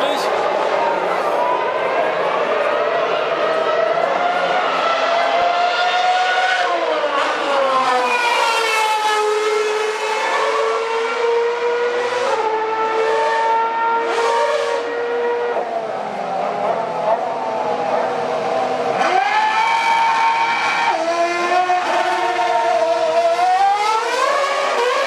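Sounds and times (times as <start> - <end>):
racing car engines at high revs: 0.3 - 25.0.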